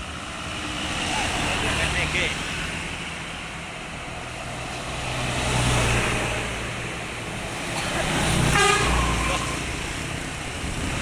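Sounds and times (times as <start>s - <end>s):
vehicles passing: 0.0s - 11.0s
car horn toot: 8.5s - 9.5s.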